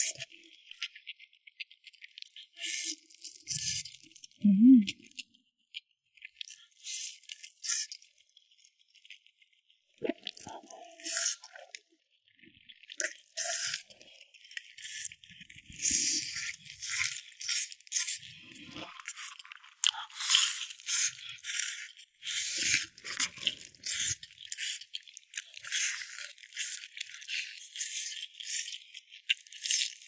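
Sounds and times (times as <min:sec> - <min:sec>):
crunchy food chewing: 0:12.8 - 0:30.0.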